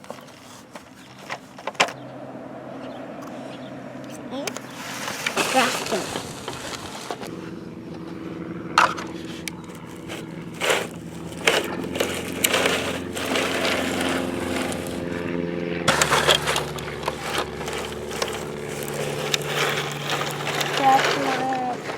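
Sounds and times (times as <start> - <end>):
motor hum: 0.9 - 21.9
scrapes and knocks: 4.6 - 7.3, 8.8 - 15.2, 15.9 - 21.9.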